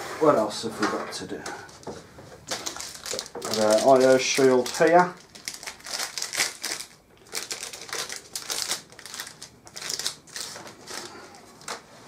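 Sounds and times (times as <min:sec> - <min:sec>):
thin metal crinkling: 0:02.4 - 0:11.8.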